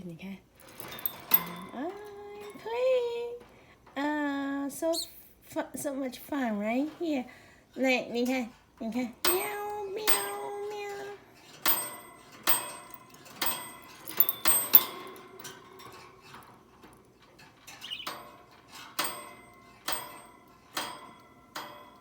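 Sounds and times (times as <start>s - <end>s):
small metal bell ringing: 0.7s - 3.2s, 9.3s - 16.0s.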